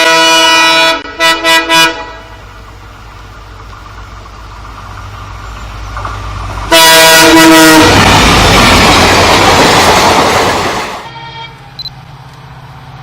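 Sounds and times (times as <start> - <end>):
locomotive horn blast: 0.0 - 2.4, 6.7 - 8.2, 11.0 - 11.7
train passing with rushing noise: 0.0 - 13.0.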